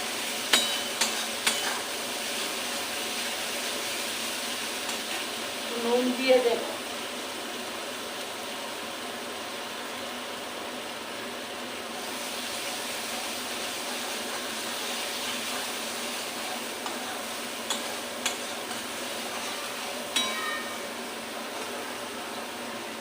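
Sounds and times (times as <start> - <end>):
paste sizzling in oil: 0.0 - 23.0
utensil knocking on pan: 20.1 - 20.8.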